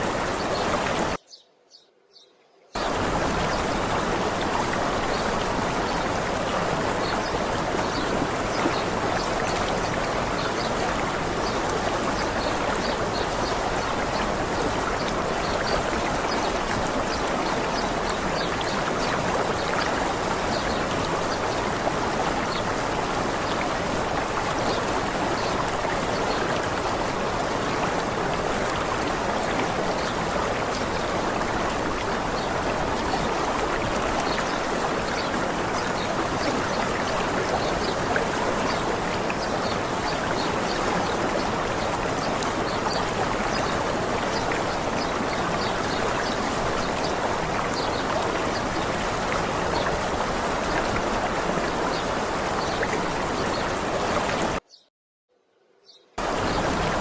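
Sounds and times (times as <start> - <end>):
waterfall rushing: 0.0 - 1.2, 2.8 - 54.6, 56.2 - 57.0
faint high bird chirps: 1.2 - 2.7, 54.7 - 56.2.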